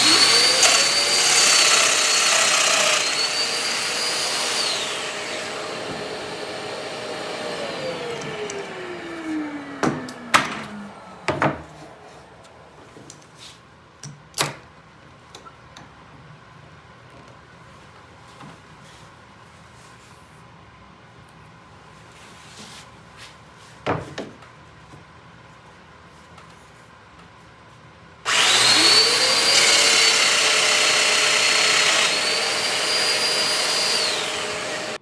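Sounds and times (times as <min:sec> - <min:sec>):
power tool motor whining: 0:00.0 - 0:12.4, 0:28.3 - 0:35.0.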